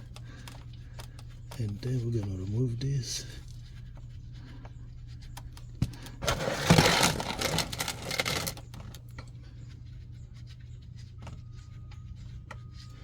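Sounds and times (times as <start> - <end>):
loud dense clattering: 6.2 - 8.6.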